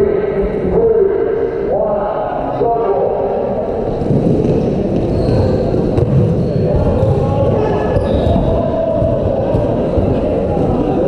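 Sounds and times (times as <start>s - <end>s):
players shouting and chatting: 0.0s - 11.0s
balls bouncing on floor: 4.0s - 11.0s.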